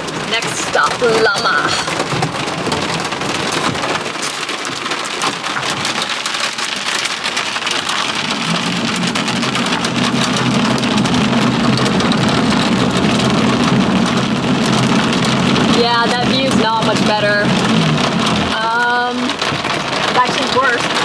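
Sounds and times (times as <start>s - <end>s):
heavy rain on car roof: 0.0s - 21.0s
low steady car hum: 6.8s - 20.7s.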